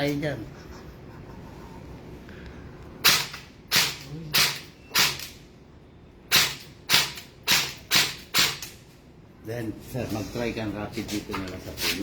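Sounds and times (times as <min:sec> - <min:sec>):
airsoft gun single shots: 0:03.0 - 0:05.3, 0:06.3 - 0:08.7.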